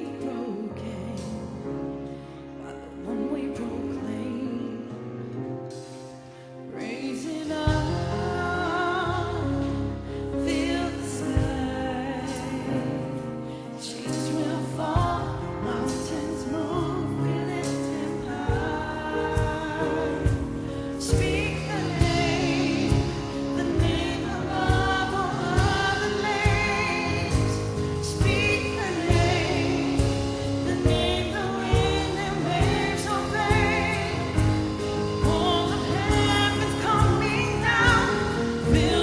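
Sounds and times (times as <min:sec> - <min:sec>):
choir singing: 0:13.9 - 0:39.0
band playing steady beat: 0:17.9 - 0:39.0.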